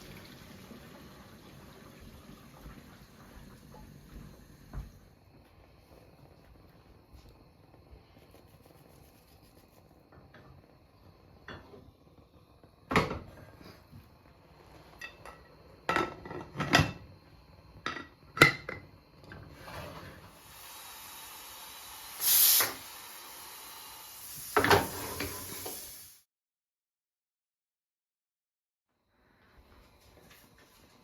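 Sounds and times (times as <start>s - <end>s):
kitchen knocks and clatters: 12.9s - 13.6s, 15.0s - 17.1s, 17.8s - 20.3s, 24.5s - 25.5s
steady hiss: 20.3s - 26.2s.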